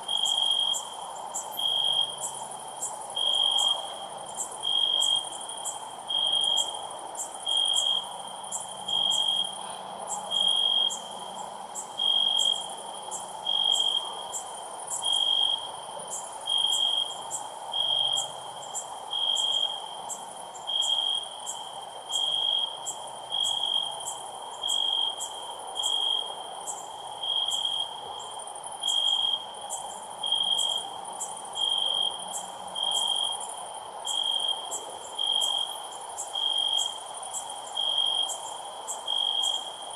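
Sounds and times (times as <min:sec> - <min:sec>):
cricket chirping: 0:00.0 - 0:39.9.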